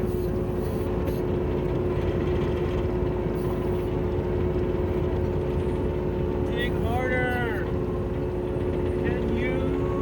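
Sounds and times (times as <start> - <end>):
excavator diesel engine running: 0.0 - 10.0
steady whine: 0.0 - 10.0.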